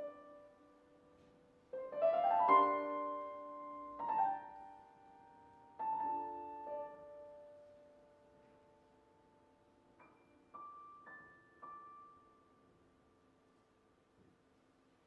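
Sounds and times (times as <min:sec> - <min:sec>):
piano playing: 0:01.7 - 0:08.3.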